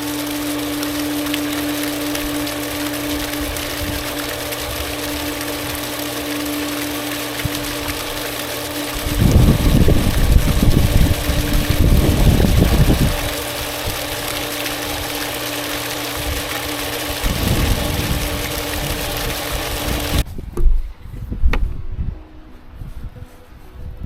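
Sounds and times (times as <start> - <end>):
water pump humming: 0.0 - 20.3
loud rough low rumble: 9.0 - 13.3, 17.2 - 19.4.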